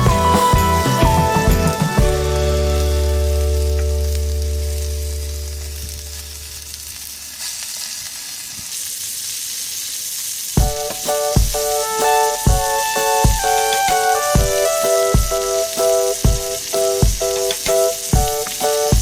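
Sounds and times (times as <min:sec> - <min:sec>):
music with sharply struck notes: 0:00.0 - 0:04.0
background music: 0:00.0 - 0:04.9, 0:10.6 - 0:19.0
food sizzling over fire: 0:00.0 - 0:19.0.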